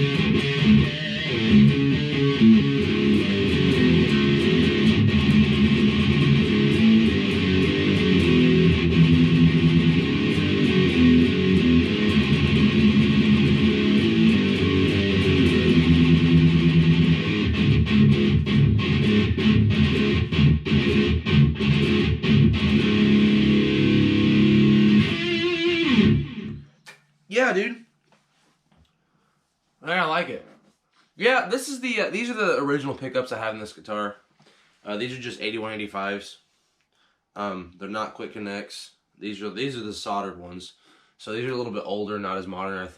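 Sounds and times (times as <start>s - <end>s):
electric guitar chords and chugs: 0.0s - 26.7s.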